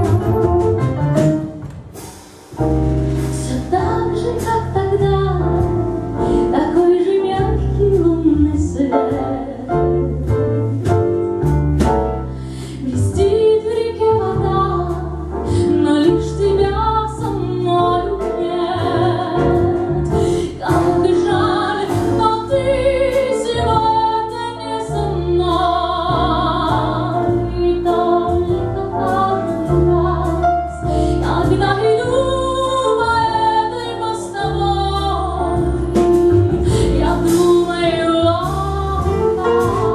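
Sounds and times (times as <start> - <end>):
keyboard backing: 0.0 - 39.9
woman singing pop song: 3.4 - 5.7, 6.4 - 11.1, 12.7 - 35.8, 36.4 - 39.9.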